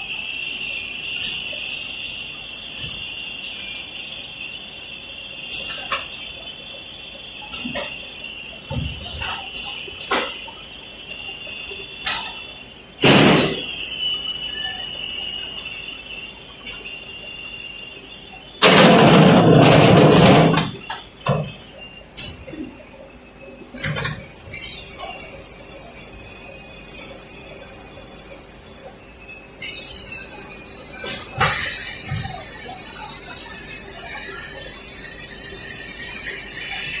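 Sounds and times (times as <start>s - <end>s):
falling high whistle: 0.0s - 18.9s
welding machine squealing: 0.0s - 37.0s
burst of hissing: 29.6s - 37.0s.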